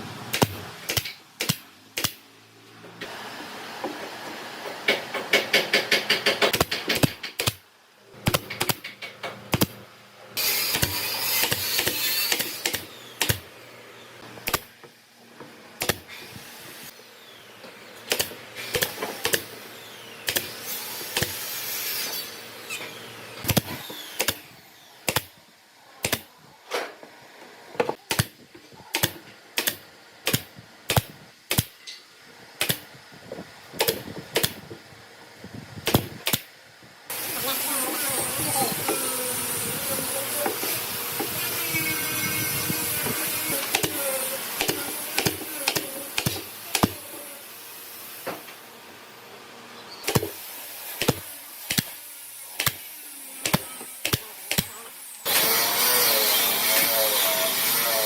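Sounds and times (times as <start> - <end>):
tool tapping on wood: 4.7 - 7.6.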